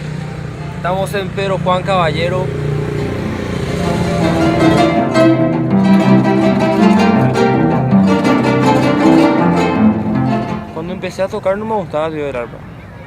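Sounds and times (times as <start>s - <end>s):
plucked and bowed strings: 3.0s - 11.4s.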